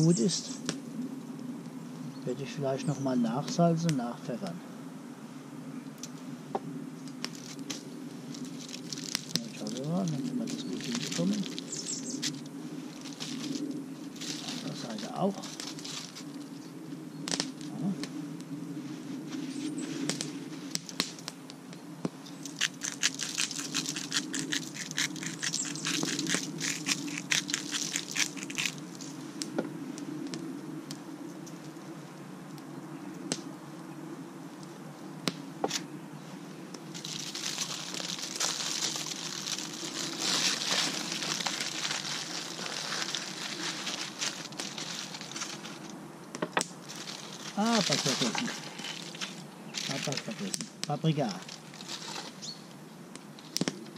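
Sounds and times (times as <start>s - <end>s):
aluminium foil crinkling: 7.2s - 16.5s, 22.4s - 29.2s, 36.9s - 45.9s, 46.8s - 52.4s.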